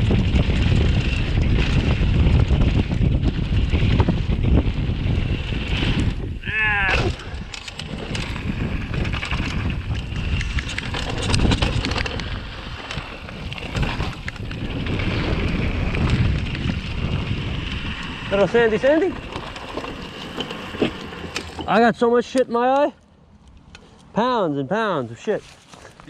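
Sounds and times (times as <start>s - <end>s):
wind buffeting microphone: 0.0s - 22.2s
person yelling: 6.4s - 7.1s.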